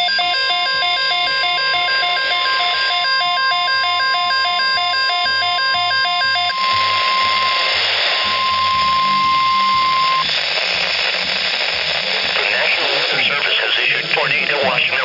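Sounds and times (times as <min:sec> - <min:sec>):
alternating two-pitch electronic tone: 0:00.0 - 0:10.3
radio static hiss: 0:01.2 - 0:15.0.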